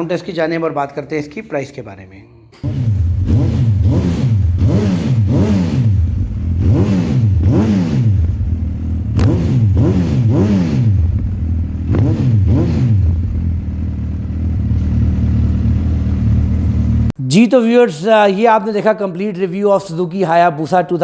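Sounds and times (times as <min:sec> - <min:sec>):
motorcycle engine revving: 0:02.6 - 0:17.2
engine idling: 0:11.0 - 0:17.2.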